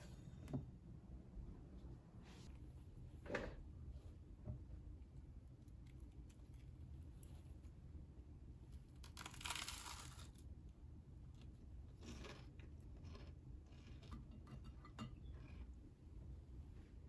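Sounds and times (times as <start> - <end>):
scrape: 2.2 - 2.6.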